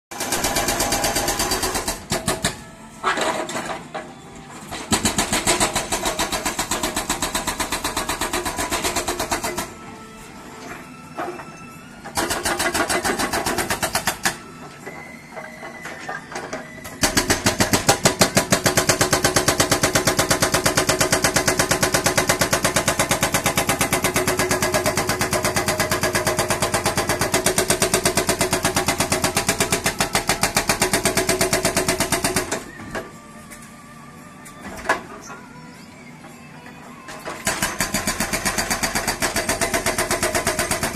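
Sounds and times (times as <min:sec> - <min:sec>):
hydraulic breaker hammering: 0:12.1 - 0:32.8.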